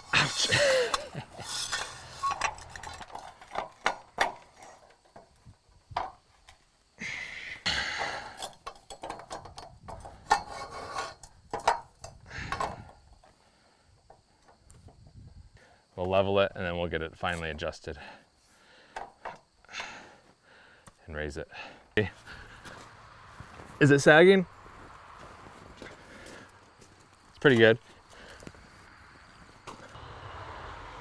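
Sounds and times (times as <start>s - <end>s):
metal scraping: 0.0s - 5.1s, 10.2s - 11.4s
metal clinks and clanks: 0.0s - 5.4s, 8.0s - 13.3s.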